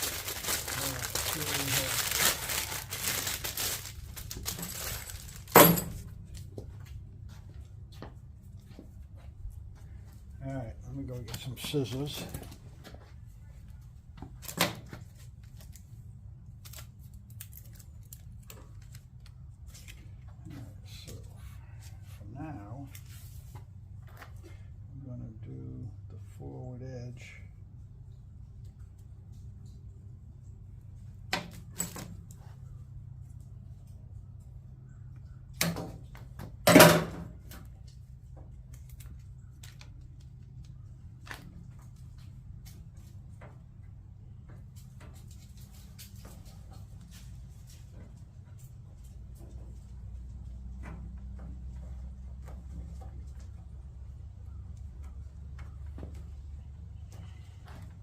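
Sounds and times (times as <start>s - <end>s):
rustles: 0.0s - 10.4s, 11.1s - 24.8s, 37.0s - 58.0s
steady low hum: 0.0s - 58.0s.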